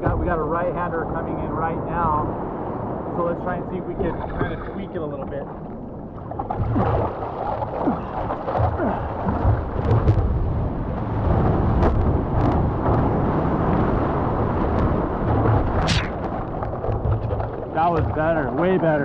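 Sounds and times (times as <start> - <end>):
breaking wave rushing: 15.8 - 16.3.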